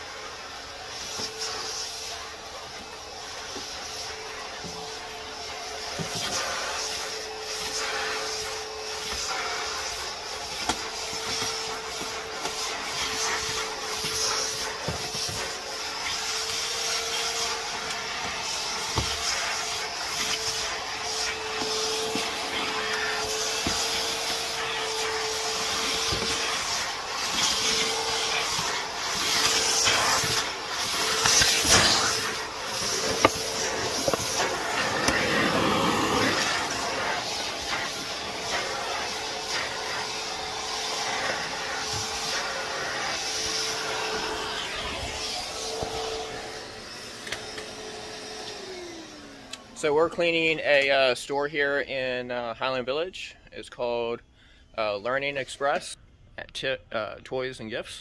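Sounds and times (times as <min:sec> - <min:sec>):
vacuum cleaner running: 0:00.0 - 0:50.6.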